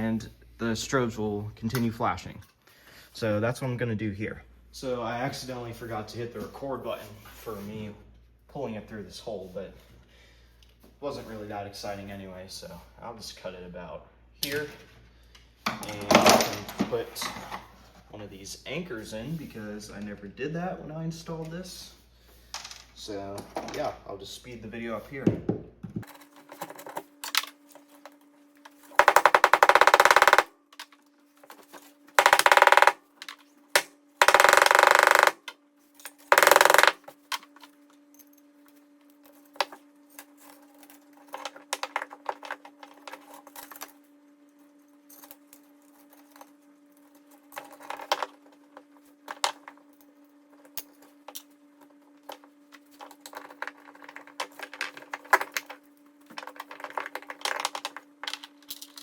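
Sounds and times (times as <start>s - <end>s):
power tool bursts: 29.0s - 30.5s, 32.2s - 33.0s, 33.8s - 35.4s, 36.3s - 37.0s.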